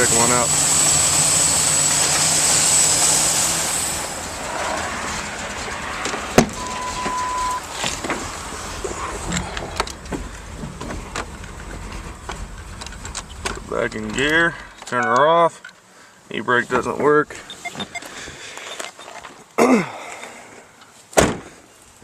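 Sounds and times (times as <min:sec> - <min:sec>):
car engine idling: 0:00.0 - 0:15.0
short steady beep: 0:06.6 - 0:07.6, 0:14.9 - 0:15.4, 0:17.5 - 0:19.2.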